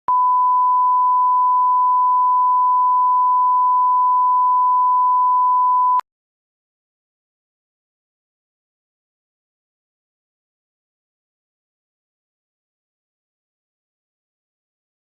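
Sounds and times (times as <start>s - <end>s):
high electronic beep: 0.1s - 6.0s.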